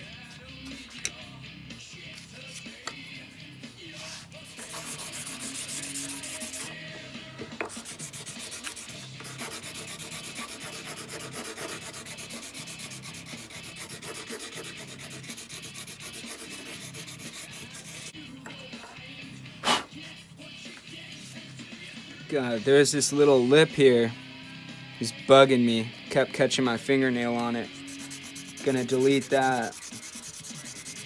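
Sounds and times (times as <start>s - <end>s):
sandpaper rubbing by hand: 3.9s - 6.7s, 7.7s - 18.1s, 19.6s - 19.9s, 27.6s - 31.0s.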